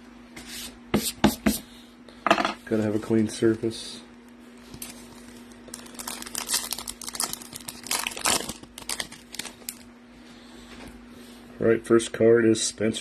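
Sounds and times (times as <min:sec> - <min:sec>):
plastic wrapper crinkling and tearing: 0:04.6 - 0:09.9.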